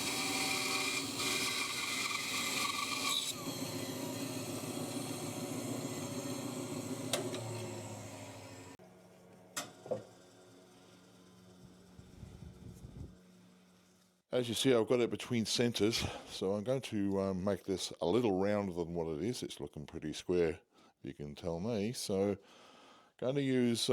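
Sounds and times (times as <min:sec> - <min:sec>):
bandsaw cutting wood: 0:00.0 - 0:08.8.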